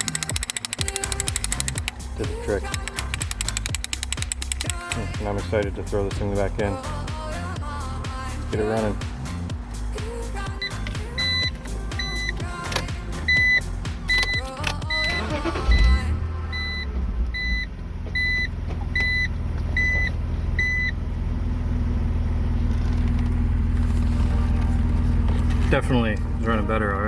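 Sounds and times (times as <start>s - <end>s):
car engine cranking and idling: 0.0s - 27.0s
dashboard warning chime beeping: 10.6s - 12.4s, 13.2s - 20.9s.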